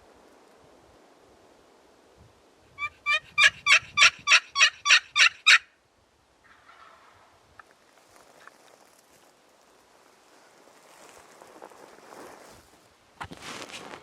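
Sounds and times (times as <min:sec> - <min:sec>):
turkey yelps: 0:02.8 - 0:05.7
faint rustling: 0:06.5 - 0:14.0.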